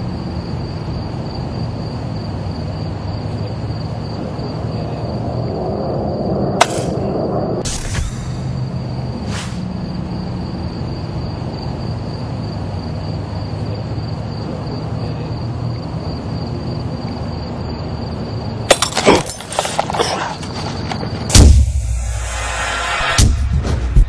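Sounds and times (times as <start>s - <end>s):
low hum: 0.0s - 19.9s, 20.5s - 24.0s
sharp cracks and thuds: 6.6s - 7.0s, 21.3s - 22.2s
loud hit: 21.3s - 24.0s.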